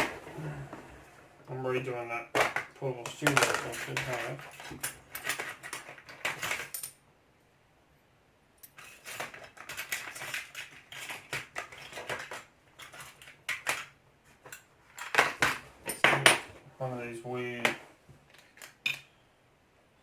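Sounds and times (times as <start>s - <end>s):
small metal parts clinking: 2.4s - 7.0s, 8.6s - 16.4s, 18.3s - 19.1s.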